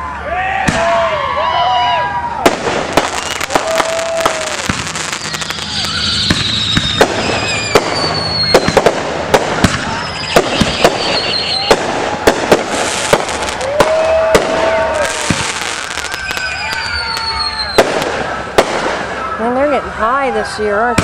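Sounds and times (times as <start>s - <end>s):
fireworks bangs and crackles: 0.6s - 1.1s, 2.3s - 21.0s
firework whistles falling in pitch: 3.0s - 8.9s, 9.5s - 18.2s.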